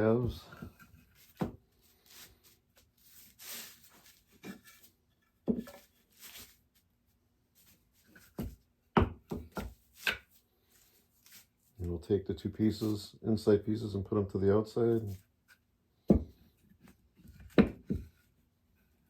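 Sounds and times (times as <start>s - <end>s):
wooden pieces knocking: 8.2s - 10.3s, 17.3s - 18.2s.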